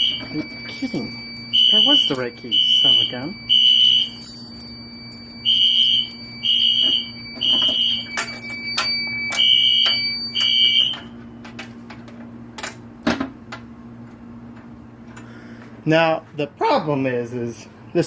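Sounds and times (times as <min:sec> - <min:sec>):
fire alarm horn blasts: 0:00.0 - 0:11.2
steady high alarm tone: 0:00.0 - 0:11.2.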